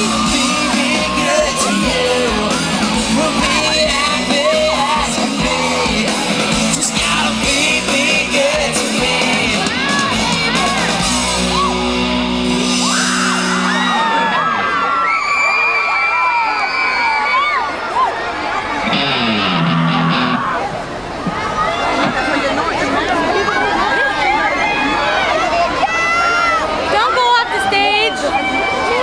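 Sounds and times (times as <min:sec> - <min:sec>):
live pop-rock band: 0:00.0 - 0:14.5, 0:18.8 - 0:20.6
fans screaming: 0:00.0 - 0:29.0.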